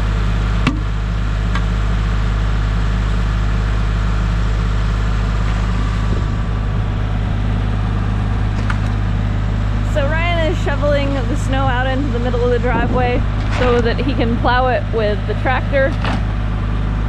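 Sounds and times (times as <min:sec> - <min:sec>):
tractor diesel engine running: 0:00.0 - 0:17.0.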